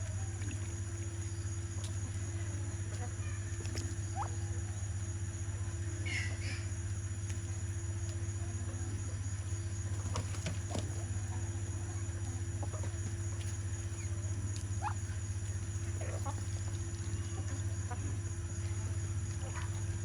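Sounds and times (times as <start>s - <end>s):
steady low hum: 0.0s - 20.0s
chicken chirps and clucks: 2.9s - 4.9s, 6.0s - 6.8s, 8.6s - 18.7s.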